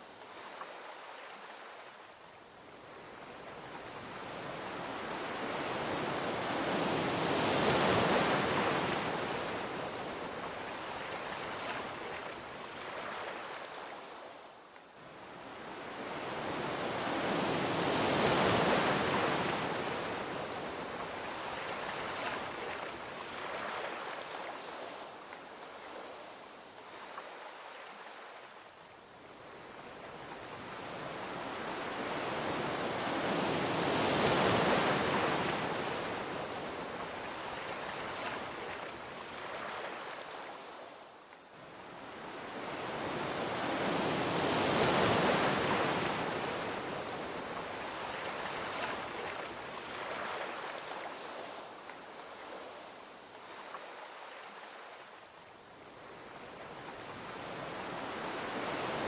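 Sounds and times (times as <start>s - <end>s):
ocean waves washing onto beach: 0.0s - 59.0s.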